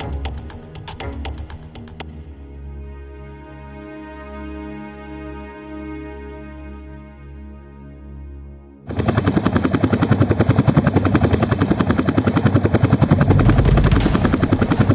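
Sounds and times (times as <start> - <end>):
soft background music: 0.0 - 9.0
machine beating fast: 13.0 - 14.9.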